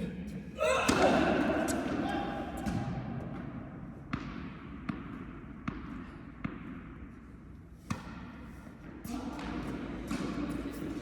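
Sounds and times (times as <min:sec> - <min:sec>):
tennis ball knocks echoing: 0:00.8 - 0:06.9.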